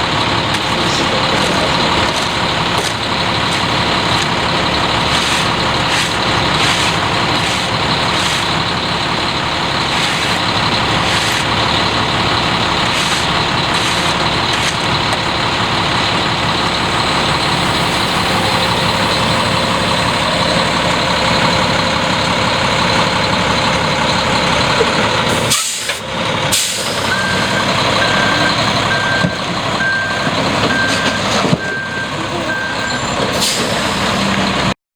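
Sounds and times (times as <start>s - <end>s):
concrete mixer truck running: 0.0s - 34.8s
backup alarm beeps: 27.0s - 33.2s.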